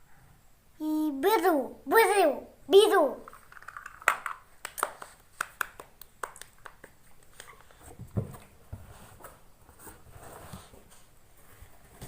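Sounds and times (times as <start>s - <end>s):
plastic toy vehicles clicking: 3.3s - 5.7s.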